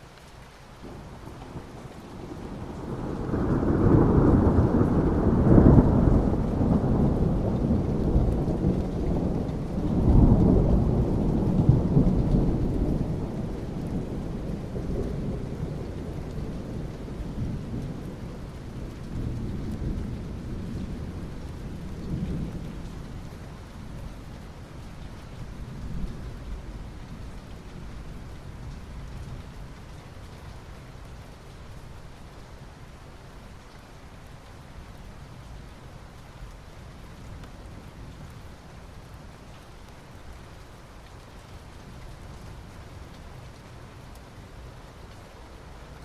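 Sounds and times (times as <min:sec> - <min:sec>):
rain on asphalt: 0:00.0 - 0:46.0
rolling thunder: 0:00.8 - 0:24.4.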